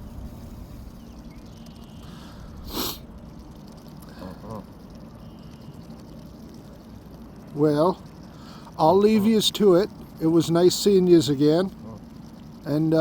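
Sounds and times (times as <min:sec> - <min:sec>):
goose hissing: 0:02.0 - 0:03.1.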